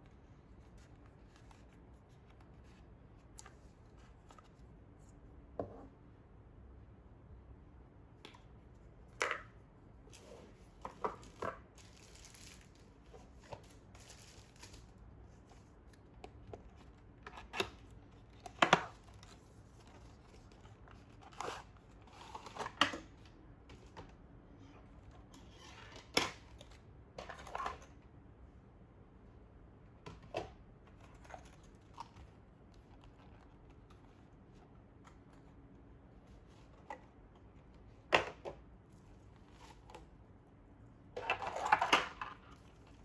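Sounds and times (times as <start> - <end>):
paper and plastic rustling: 0.5 - 4.7, 10.1 - 15.8.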